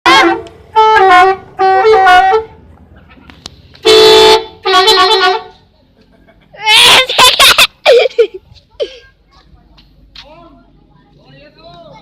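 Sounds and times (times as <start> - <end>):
musical air horns playing tunes: 0.1 - 2.6, 3.8 - 5.6.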